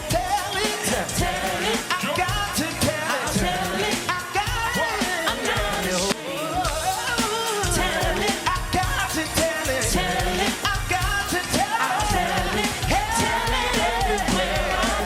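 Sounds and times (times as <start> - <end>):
gospel song with drums and bass: 0.0 - 15.0.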